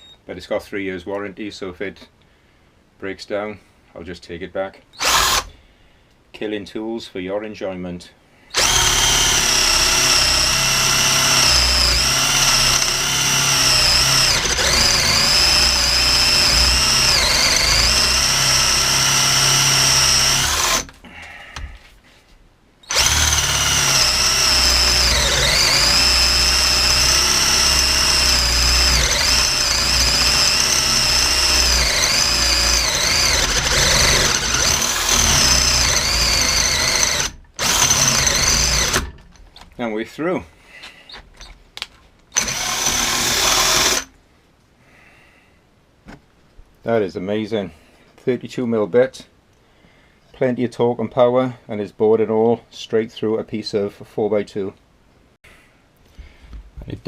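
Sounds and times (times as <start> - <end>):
cordless drill boring wood: 5.0 - 5.5, 8.5 - 21.0, 22.8 - 39.2, 42.3 - 44.1.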